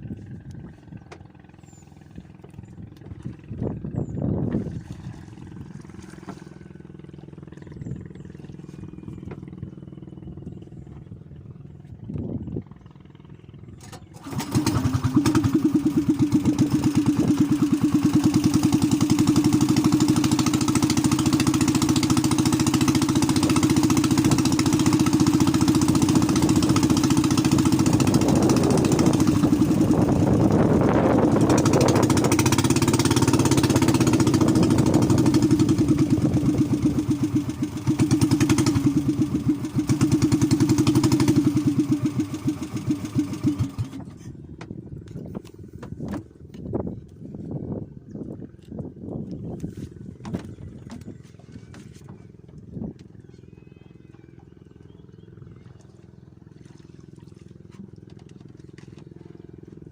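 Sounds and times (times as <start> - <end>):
small engine running: 0.0 - 46.2.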